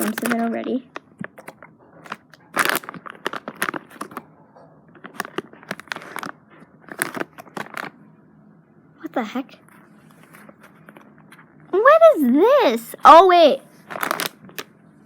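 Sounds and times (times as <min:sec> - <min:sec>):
package crinkling and tearing: 0:00.0 - 0:04.2, 0:04.9 - 0:08.0, 0:13.8 - 0:14.7.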